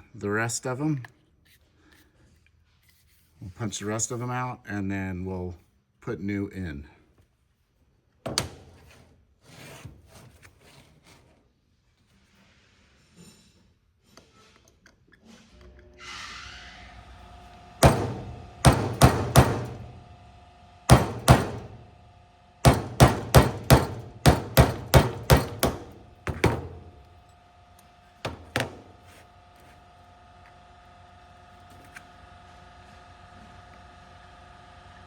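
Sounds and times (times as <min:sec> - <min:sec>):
metal ringing: 0:17.8 - 0:20.0, 0:20.9 - 0:21.8
hammer striking metal punch: 0:17.8 - 0:20.1, 0:20.9 - 0:21.9, 0:22.6 - 0:27.1, 0:28.3 - 0:29.0.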